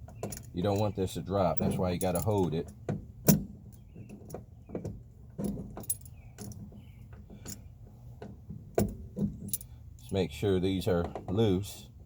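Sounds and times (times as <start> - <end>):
small metal tools clinking: 0.1 - 2.8, 5.5 - 6.6, 9.4 - 10.2.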